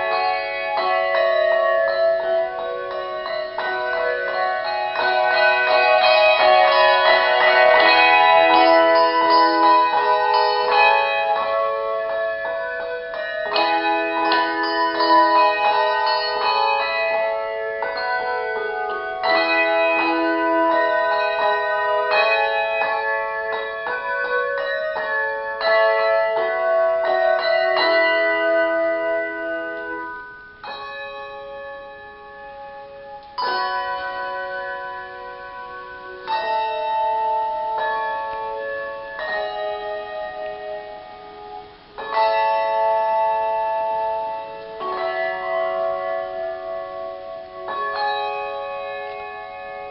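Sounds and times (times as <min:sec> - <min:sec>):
handbells ringing chords: 0:00.0 - 0:49.9.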